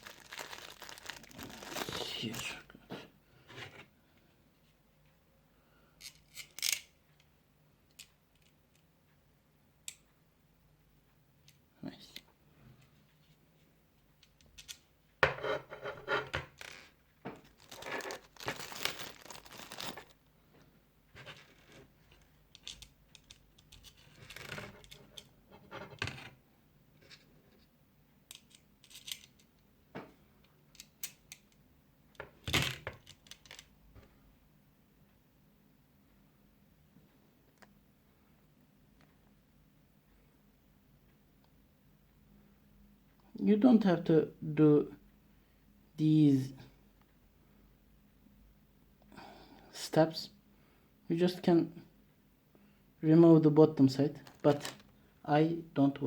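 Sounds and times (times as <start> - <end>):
packaging rustling and scraping: 0.0 - 2.6, 16.0 - 20.2, 21.2 - 22.3, 23.8 - 25.2, 54.2 - 54.9
hardware parts clicking and clinking: 6.0 - 7.3, 21.2 - 25.3, 28.3 - 29.6.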